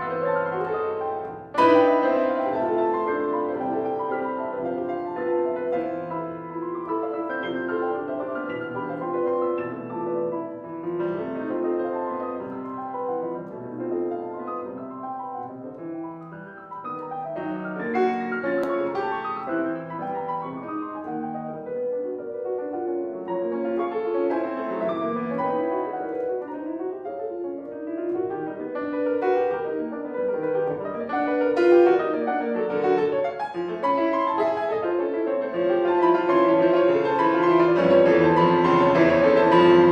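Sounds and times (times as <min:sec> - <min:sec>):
solo piano: 0:00.0 - 0:39.9.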